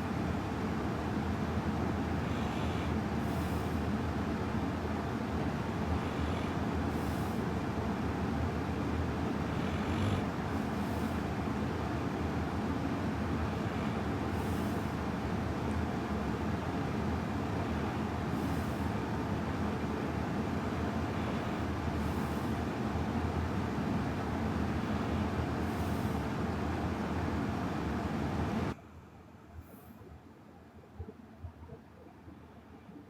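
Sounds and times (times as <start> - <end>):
low hum and hiss: 0.0 - 33.0
sleeping person breathing: 2.0 - 3.9, 5.7 - 7.5, 9.3 - 11.3, 18.3 - 19.0, 21.0 - 22.8, 24.8 - 26.4.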